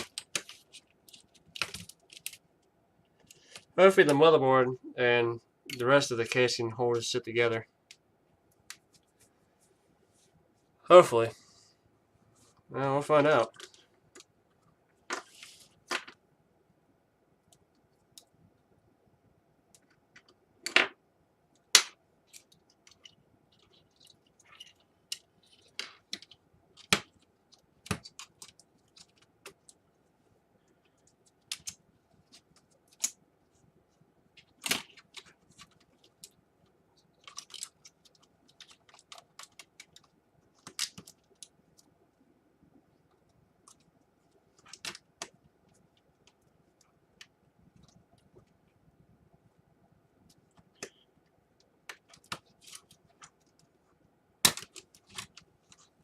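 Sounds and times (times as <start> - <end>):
plastic laptop parts clicking: 0.0 - 2.4, 21.6 - 29.8, 30.9 - 33.2, 34.4 - 36.4, 37.0 - 41.9, 44.5 - 48.3, 51.6 - 53.7, 54.4 - 56.0
faint steady hum: 0.0 - 56.0.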